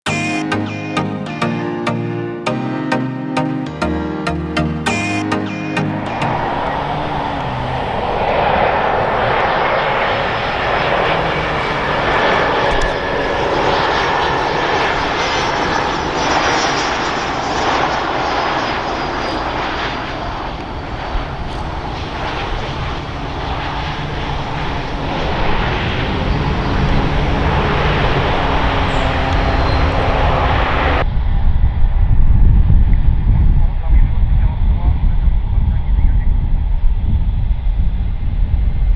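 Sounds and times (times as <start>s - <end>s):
jet engines running: 5.4s - 31.0s.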